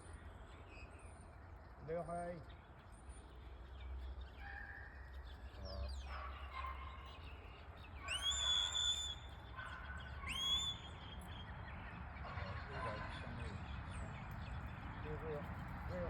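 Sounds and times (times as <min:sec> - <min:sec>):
shepherd's whistle: 0:08.1 - 0:09.3, 0:10.3 - 0:11.0.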